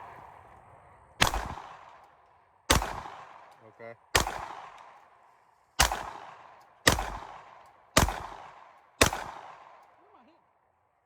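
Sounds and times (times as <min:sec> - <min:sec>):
pistol shots with echo: 0:01.2 - 0:05.2, 0:05.8 - 0:10.3.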